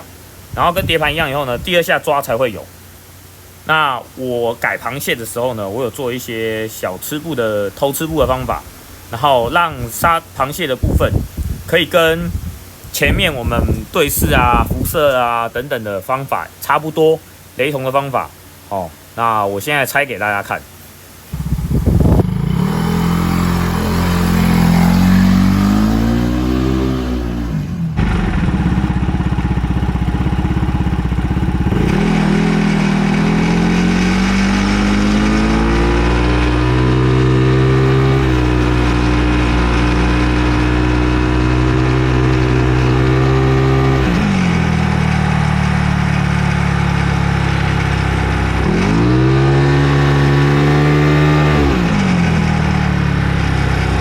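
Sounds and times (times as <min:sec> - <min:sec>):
scooter engine revving: 0:21.3 - 0:54.0.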